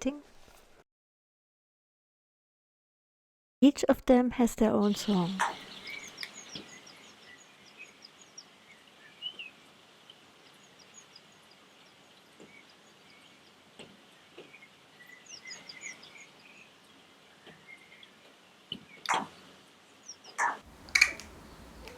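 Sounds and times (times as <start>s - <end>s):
crow clicks: 5.3s - 6.7s, 19.0s - 19.4s, 20.3s - 21.9s.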